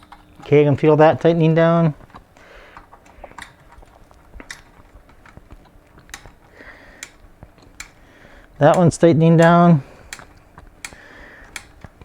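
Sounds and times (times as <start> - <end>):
screwdriver clicks and ticks: 2.8 - 6.4, 7.0 - 8.0, 8.6 - 12.0.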